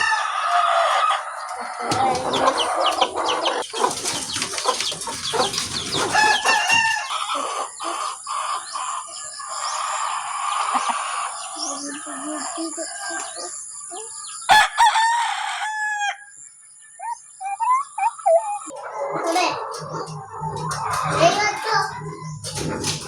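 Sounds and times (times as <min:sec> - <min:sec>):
hens scuffling: 0:00.0 - 0:08.0, 0:19.1 - 0:23.0
hens clucking: 0:00.0 - 0:13.3, 0:17.0 - 0:23.0.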